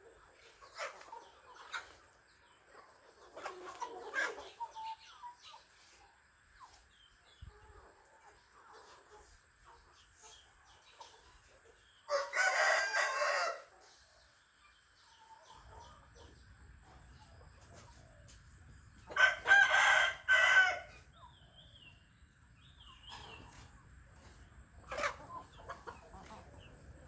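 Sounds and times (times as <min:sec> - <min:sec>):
rooster crowing: 0:12.1 - 0:13.7, 0:19.2 - 0:21.0.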